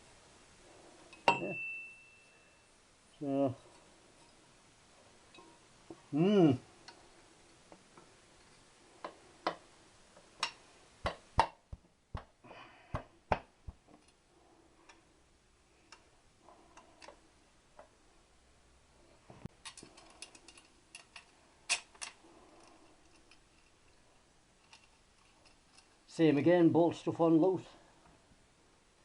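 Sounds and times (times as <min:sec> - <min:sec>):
tools and parts clicking and knocking: 0:19.5 - 0:24.0, 0:24.6 - 0:26.0.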